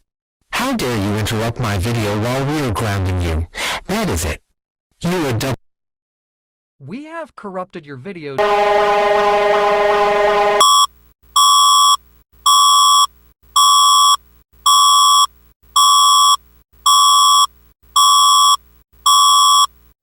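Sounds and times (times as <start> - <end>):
electronic alert beeps: 10.4 - 19.7.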